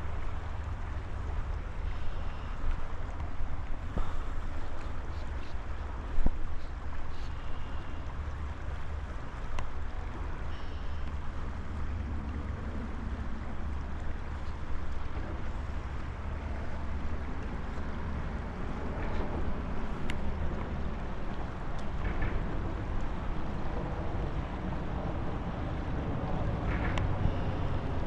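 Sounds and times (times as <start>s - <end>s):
river flowing: 0.0s - 28.0s
wind rumble on microphone: 0.0s - 28.0s
faint clicks: 9.4s - 9.7s, 20.0s - 23.2s.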